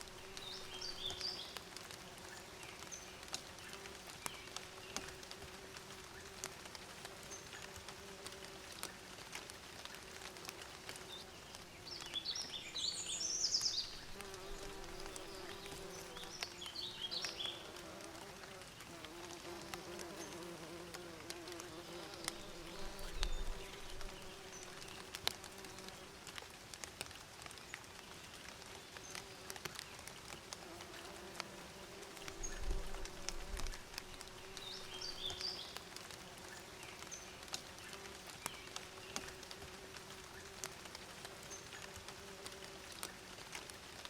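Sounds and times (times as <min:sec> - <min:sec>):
bees buzzing: 0:13.9 - 0:25.8.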